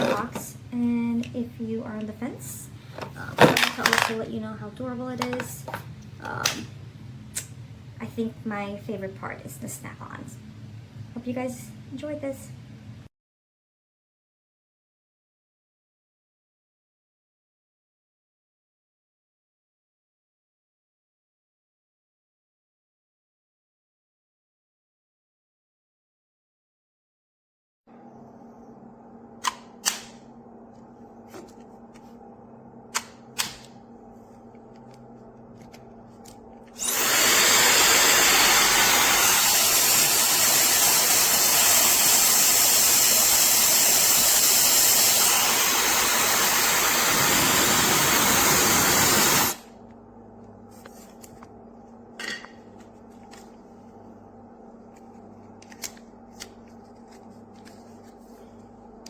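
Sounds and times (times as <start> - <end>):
hair dryer blowing: 36.8 - 49.6.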